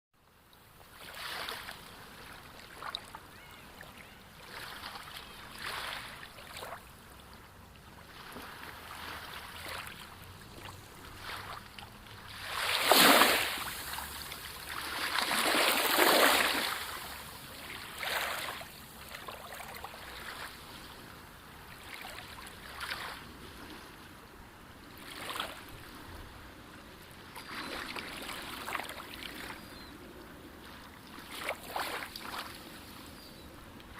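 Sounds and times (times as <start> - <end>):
sea waves washing: 3.8 - 7.2, 7.8 - 20.9
loud waves breaking: 12.2 - 18.6.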